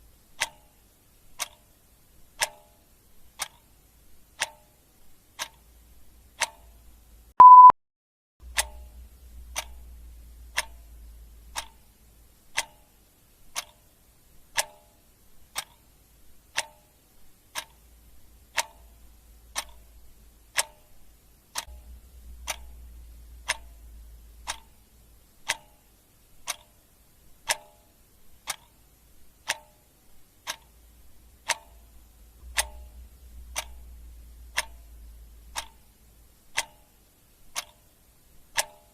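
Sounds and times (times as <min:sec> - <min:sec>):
clock ticking: 0:00.3 - 0:07.7, 0:08.4 - 0:38.9
short loud beep: 0:07.4 - 0:07.8.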